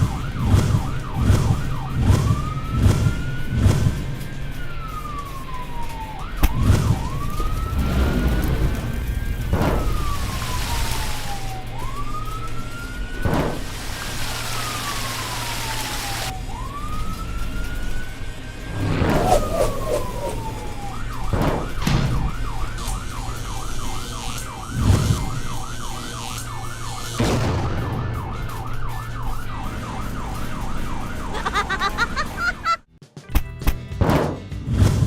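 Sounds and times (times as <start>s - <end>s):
cartoon emergency siren: 0.0s - 32.9s
sudden whooshes or thuds: 18.7s - 22.4s.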